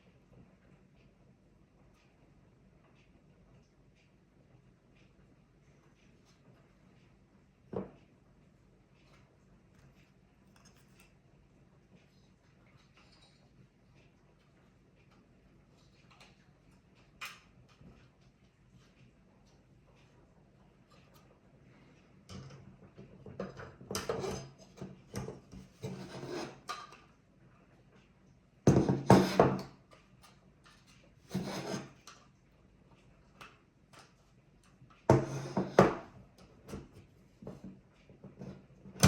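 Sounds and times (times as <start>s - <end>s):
hands rubbing and scraping parts: 25.4s - 27.0s, 30.3s - 32.2s.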